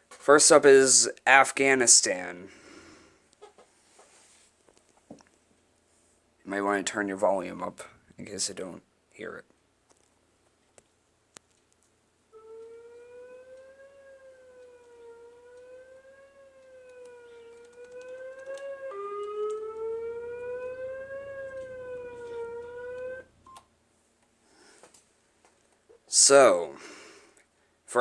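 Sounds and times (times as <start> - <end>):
wavering warning siren: 12.3 - 23.7.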